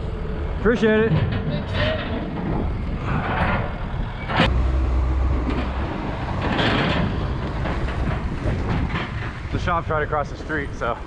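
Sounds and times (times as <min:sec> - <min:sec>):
vehicle engine running: 0:04.4 - 0:09.5.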